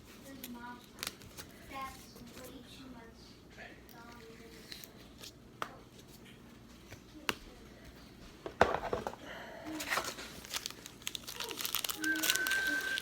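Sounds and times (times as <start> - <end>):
packaging rustling: 8.7 - 13.0.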